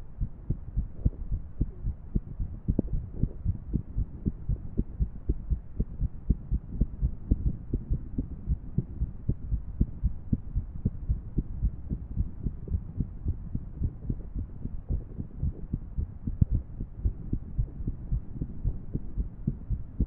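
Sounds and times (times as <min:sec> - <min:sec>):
heartbeat thuds: 0:00.0 - 0:20.0.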